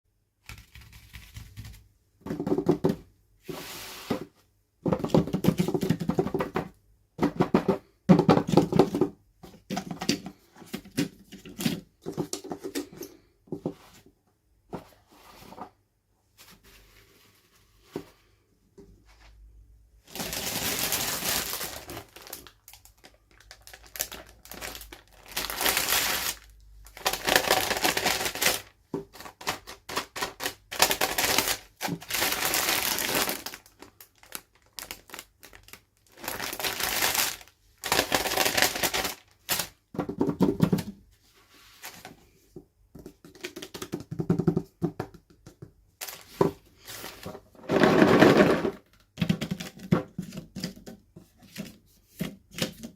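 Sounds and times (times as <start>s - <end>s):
toy packaging crinkling: 20.1s - 39.8s.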